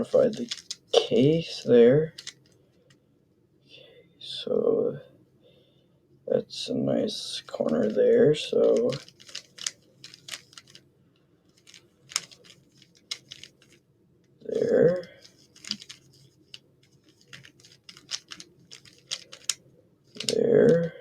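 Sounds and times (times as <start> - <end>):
puzzle cube plastic clicks: 0.0 - 1.1, 2.0 - 2.5, 7.6 - 8.0, 8.6 - 10.8, 11.5 - 13.8, 14.6 - 20.9.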